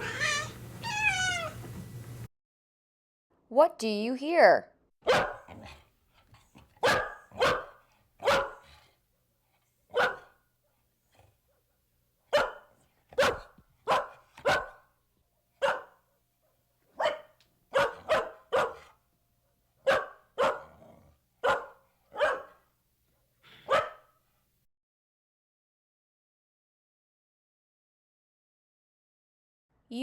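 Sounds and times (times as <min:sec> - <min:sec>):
dog barking: 0:05.0 - 0:05.8, 0:06.8 - 0:08.7, 0:09.9 - 0:10.4, 0:12.3 - 0:14.9, 0:15.6 - 0:16.0, 0:16.9 - 0:19.0, 0:19.8 - 0:20.8, 0:21.4 - 0:22.7, 0:23.6 - 0:24.2.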